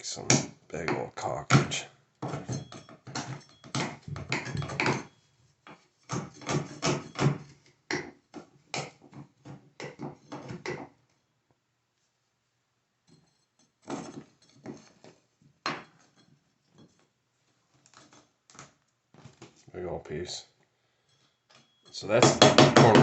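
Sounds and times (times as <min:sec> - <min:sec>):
hand tool scraping caulk: 0:06.0 - 0:07.2.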